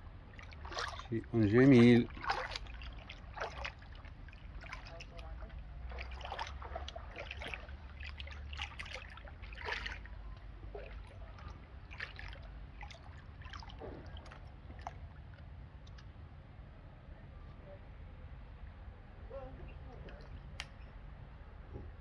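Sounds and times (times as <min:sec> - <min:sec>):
water splashing and trickling: 0:00.0 - 0:16.2
steady low rumble: 0:00.0 - 0:21.6.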